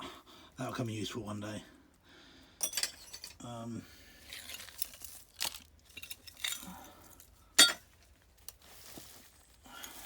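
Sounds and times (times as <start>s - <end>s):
broken glass clinking and crunching: 2.6s - 3.4s, 4.2s - 6.7s, 7.6s - 7.9s.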